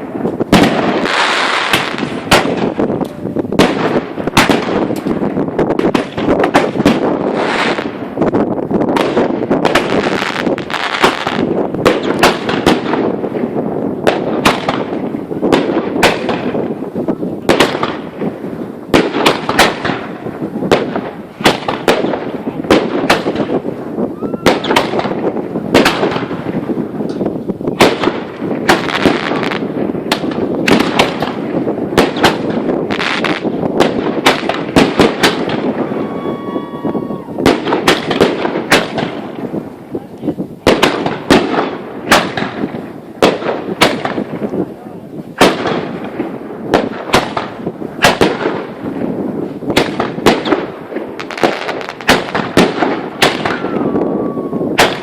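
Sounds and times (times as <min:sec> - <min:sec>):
fireworks crackling: 0:00.0 - 0:55.0
firework whistle: 0:24.1 - 0:25.1, 0:35.8 - 0:37.6, 0:53.3 - 0:55.0.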